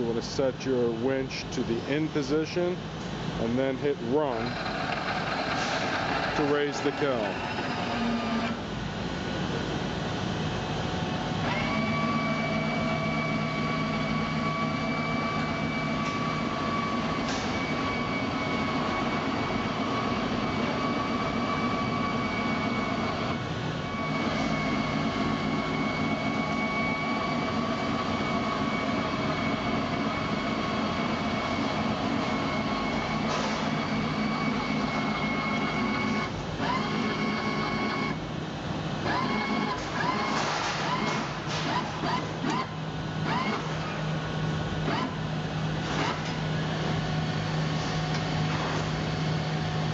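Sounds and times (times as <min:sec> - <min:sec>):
electric winch motor whine: 0:04.2 - 0:08.6, 0:11.4 - 0:38.2, 0:39.0 - 0:44.0, 0:44.8 - 0:45.2.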